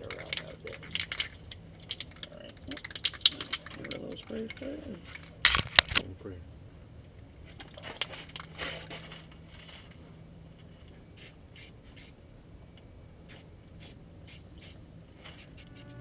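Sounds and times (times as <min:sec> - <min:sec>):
scraping handling noise: 0:07.4 - 0:10.0
aerosol spray can hissing: 0:13.3 - 0:15.7.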